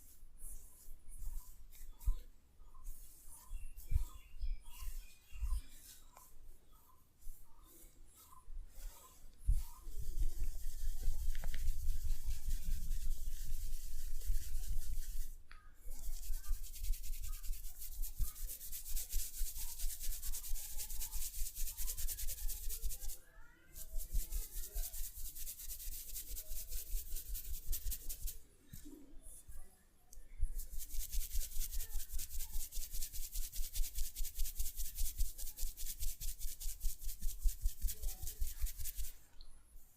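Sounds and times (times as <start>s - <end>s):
hands rubbing briskly: 6.9s - 28.4s, 30.4s - 39.2s.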